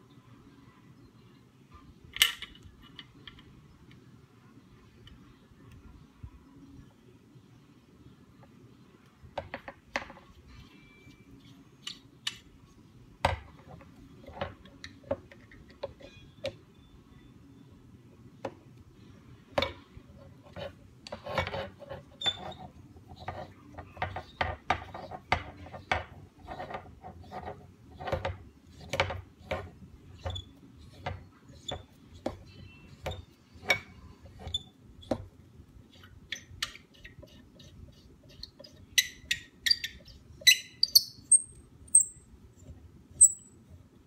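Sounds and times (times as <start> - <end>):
small metal parts clicking and scraping: 43.2 - 43.6.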